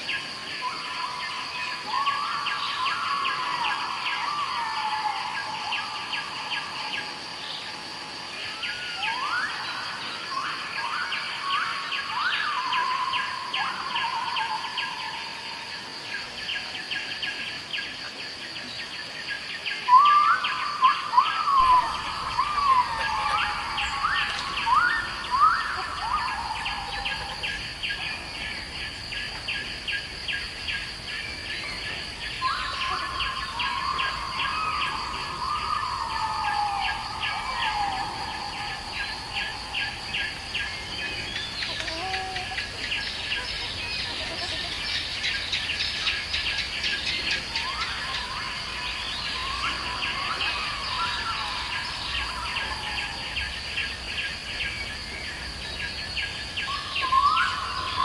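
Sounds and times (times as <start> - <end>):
birds calling: 19.8 - 58.0.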